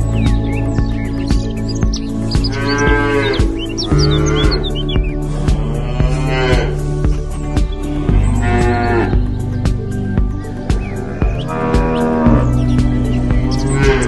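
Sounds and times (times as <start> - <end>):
background music with beat: 0.0 - 14.0
cow mooing: 2.6 - 4.7, 5.4 - 6.8, 8.2 - 9.2, 11.1 - 12.6.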